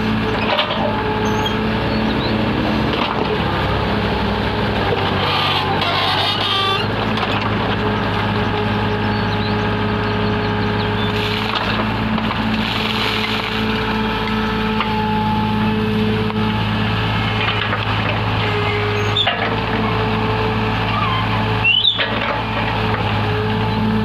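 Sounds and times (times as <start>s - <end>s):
diesel engine running: 0.0s - 24.0s
rasping of machine working: 5.0s - 7.0s.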